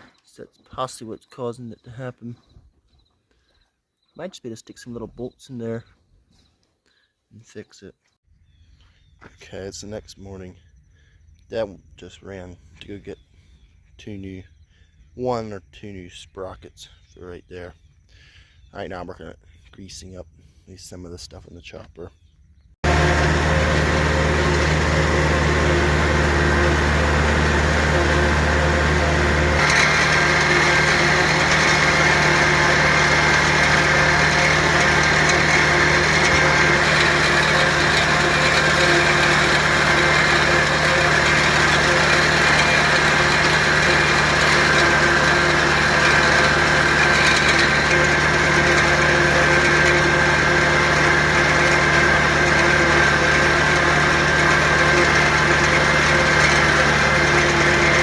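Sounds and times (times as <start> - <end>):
tractor engine running: 22.8 - 58.0.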